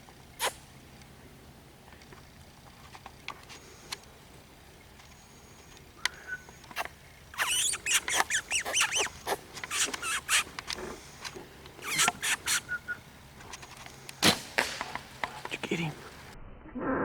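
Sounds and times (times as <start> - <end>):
predator call squealing: 0.4 - 0.6, 6.2 - 13.1
sharp clicks: 5.0 - 16.4.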